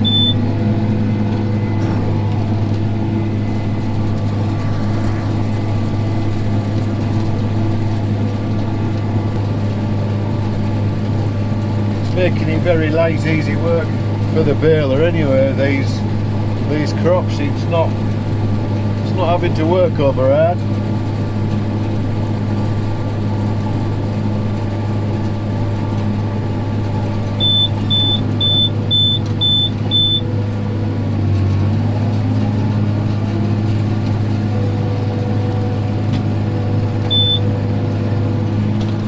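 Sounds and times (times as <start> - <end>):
short high-pitched beeps: 0.0 - 0.4, 27.4 - 30.2, 37.1 - 37.4
tractor engine running: 0.0 - 39.0.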